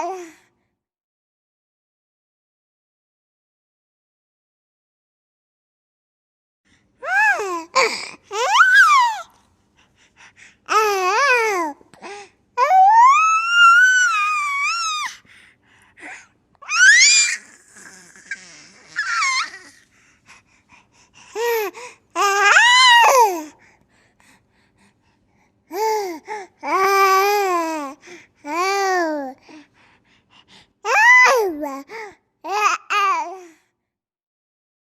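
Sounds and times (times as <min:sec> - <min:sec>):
baby laughing and squealing: 0:08.3 - 0:09.3, 0:12.6 - 0:15.2, 0:16.6 - 0:19.8.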